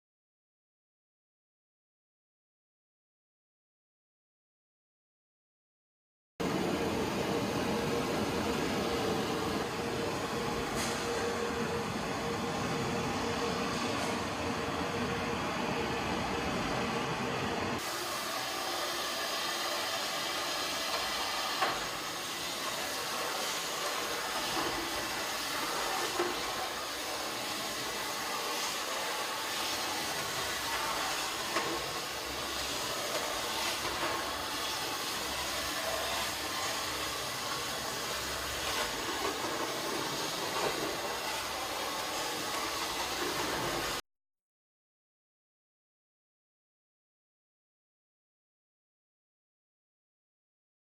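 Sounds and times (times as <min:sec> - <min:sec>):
high-pressure water jets hissing: 0:17.8 - 0:44.0.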